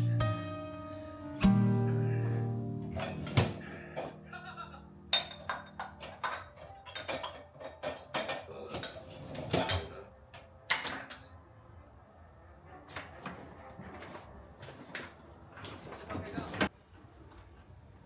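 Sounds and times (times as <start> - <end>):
dishes and cutlery clinking: 5.1 - 10.1, 10.7 - 11.4.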